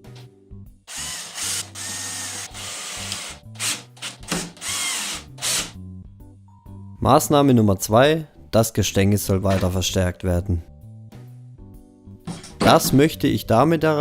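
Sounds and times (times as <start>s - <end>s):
power drill running: 0.9s - 5.7s.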